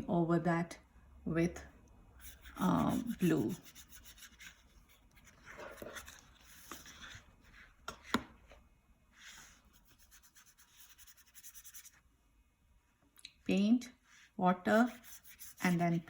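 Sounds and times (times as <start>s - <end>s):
paintbrush brushing on paper: 2.2s - 7.7s, 9.1s - 12.0s, 14.0s - 16.0s.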